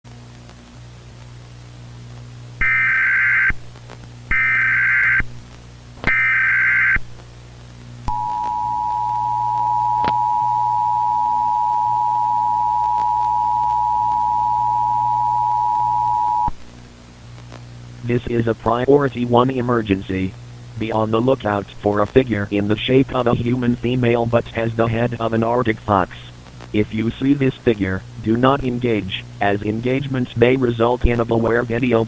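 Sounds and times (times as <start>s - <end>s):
faint low hum: 0.1s - 32.0s
two-tone attention signal: 8.1s - 16.5s
warbling digital data tones: 8.1s - 16.5s.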